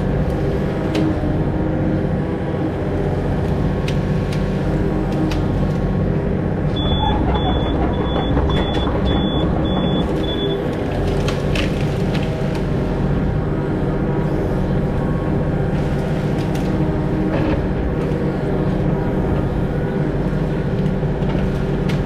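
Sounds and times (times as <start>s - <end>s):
excavator diesel engine running: 0.0s - 22.0s
sharp knocks: 6.8s - 10.8s.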